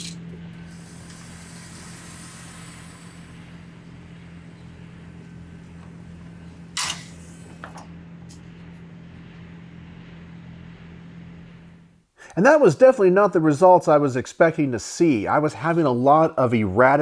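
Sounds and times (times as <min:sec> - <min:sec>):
low hum: 0:00.0 - 0:12.1.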